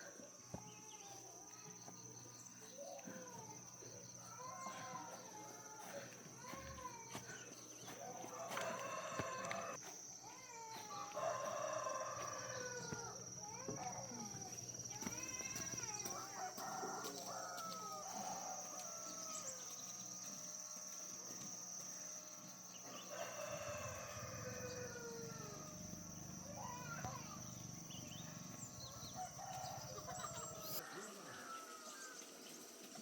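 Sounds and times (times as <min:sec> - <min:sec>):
roosters crowing: 0:02.8 - 0:09.8, 0:10.9 - 0:13.4, 0:15.7 - 0:19.8, 0:22.1 - 0:32.4.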